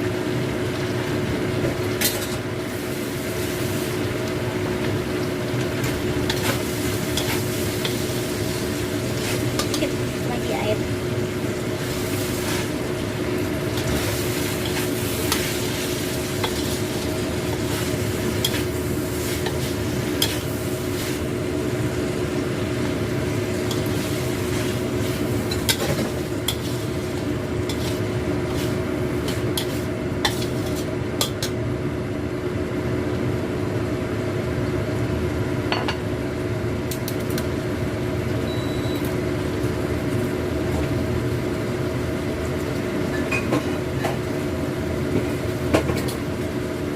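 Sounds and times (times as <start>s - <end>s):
food sizzling in a pan: 0.0s - 31.6s
spatula scraping a pan: 27.7s - 30.9s.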